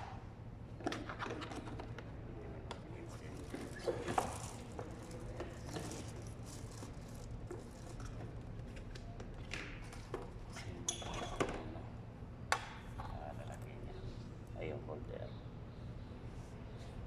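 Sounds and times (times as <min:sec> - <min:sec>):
steady low hum: 0:00.0 - 0:17.0
objects being handled: 0:03.0 - 0:11.6.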